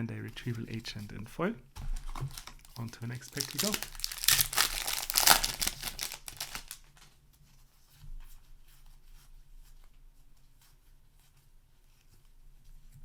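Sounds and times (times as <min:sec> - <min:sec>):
foil wrapper crinkling: 0:01.8 - 0:07.2
cards rustling: 0:01.9 - 0:07.1.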